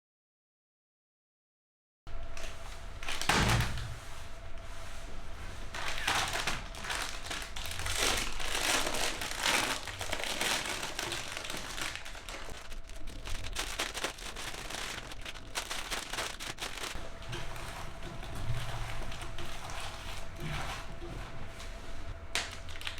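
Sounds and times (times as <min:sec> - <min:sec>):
meat grinder crackling: 0:05.7 - 0:21.5, 0:22.2 - 0:22.9.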